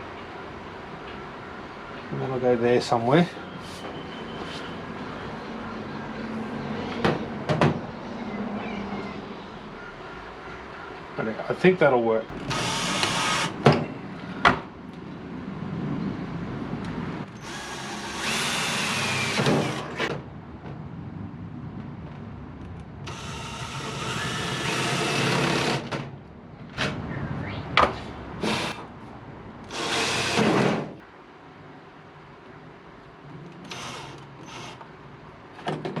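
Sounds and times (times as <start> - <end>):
cordless drill running: 12.5 - 13.6, 17.4 - 20.0, 23.1 - 25.8, 29.7 - 30.5, 33.7 - 34.8.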